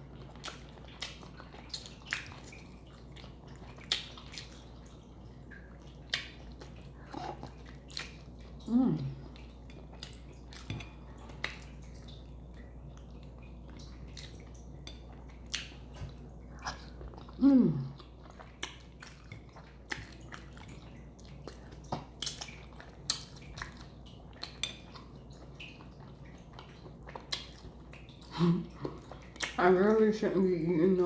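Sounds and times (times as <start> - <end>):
person chewing food: 0.0 - 29.6
wet mouth clicks and smacks: 3.8 - 4.5, 29.4 - 29.6.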